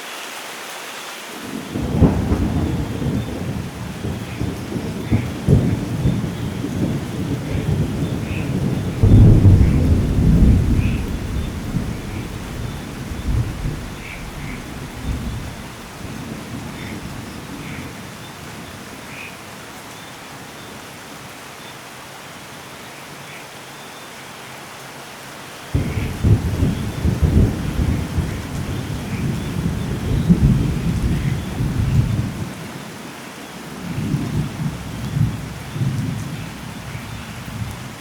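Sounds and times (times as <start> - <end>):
steady rain: 0.0 - 38.0
thunder rumbling: 1.5 - 19.1, 25.7 - 32.6, 33.8 - 38.0.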